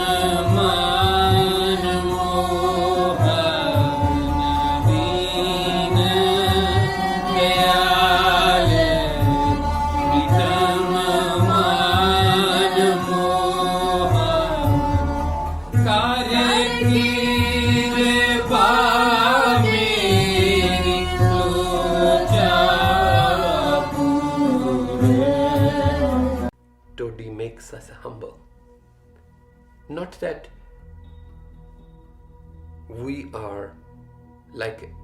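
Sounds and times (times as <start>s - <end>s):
person singing gliding melody: 0.0s - 26.5s
steady drone: 0.0s - 26.5s.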